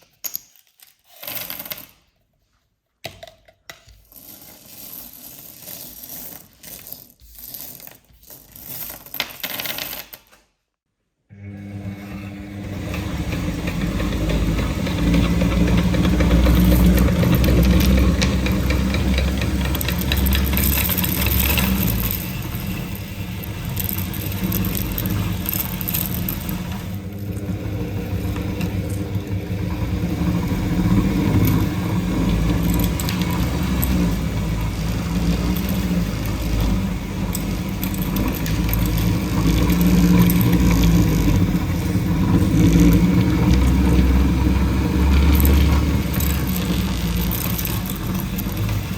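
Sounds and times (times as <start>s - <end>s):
candies crunching in grinder: 0.7s - 2.1s, 4.0s - 10.4s, 13.0s - 48.9s
hard candies rattling: 4.0s - 10.4s, 16.1s - 27.0s, 32.3s - 41.6s, 45.0s - 48.9s
meat grinder motor humming: 11.3s - 48.9s.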